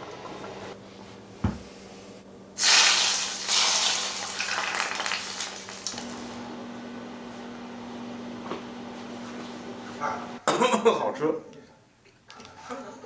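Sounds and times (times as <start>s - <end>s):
water running into a sink: 2.6s - 6.4s.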